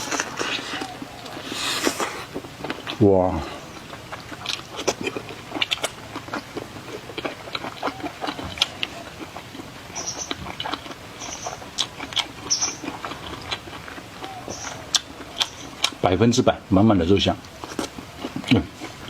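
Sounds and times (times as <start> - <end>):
slurps: 0.0 - 3.8
wet chewing: 0.0 - 19.0
lip smacks and mouth clicks: 3.7 - 16.0.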